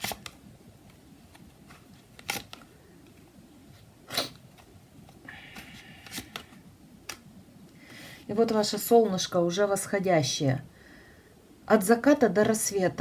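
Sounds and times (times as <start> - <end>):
cards clicking and swishing: 0.0 - 2.7, 4.1 - 7.3
faint card rustle: 0.0 - 7.2.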